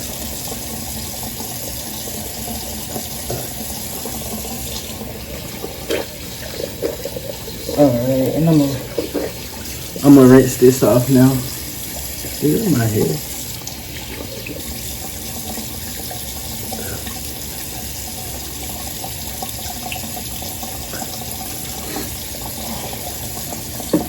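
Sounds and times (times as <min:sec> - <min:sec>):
face being rinsed: 0:00.0 - 0:24.0
faucet running: 0:00.0 - 0:24.0.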